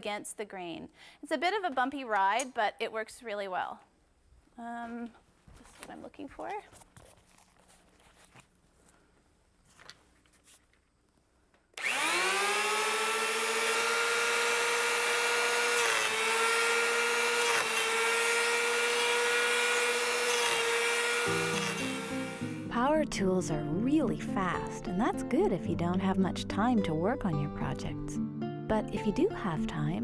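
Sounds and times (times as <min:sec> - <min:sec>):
electric power planer whining: 0:11.8 - 0:22.7.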